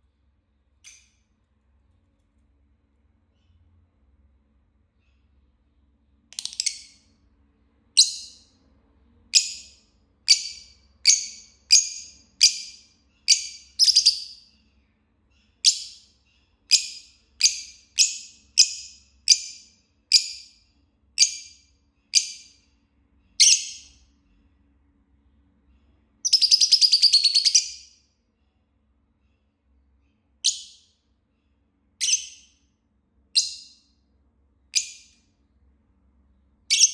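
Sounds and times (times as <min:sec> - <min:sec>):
lovebird high-pitched chirps: 0:06.3 - 0:07.1, 0:08.0 - 0:08.6, 0:09.3 - 0:14.6, 0:15.3 - 0:22.7, 0:23.3 - 0:24.0, 0:26.2 - 0:28.0, 0:30.4 - 0:31.0, 0:32.0 - 0:32.7, 0:33.4 - 0:34.0, 0:34.7 - 0:35.3, 0:36.7 - 0:36.9.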